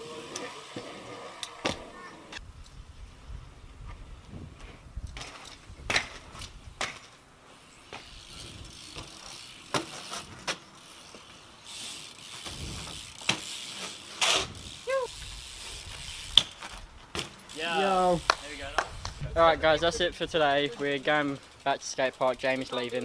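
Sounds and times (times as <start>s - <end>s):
bike tyres rolling on concrete: 0.0s - 23.0s
bike clicks and knocks: 3.8s - 19.2s.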